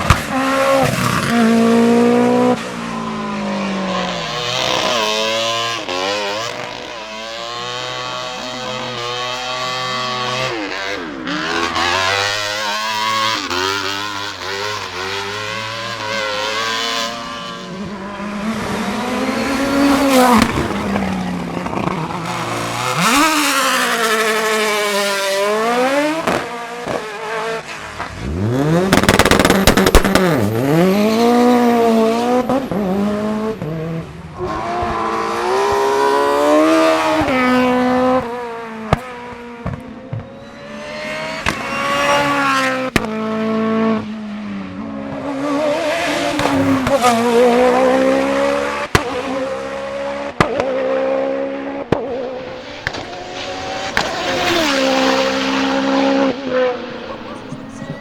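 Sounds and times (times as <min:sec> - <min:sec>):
racing car engines revving: 0:00.0 - 0:58.0.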